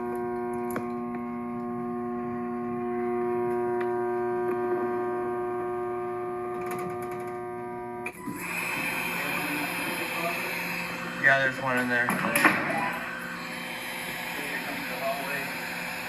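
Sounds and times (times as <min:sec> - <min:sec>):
fire alarm bells ringing: 0:08.2 - 0:16.0.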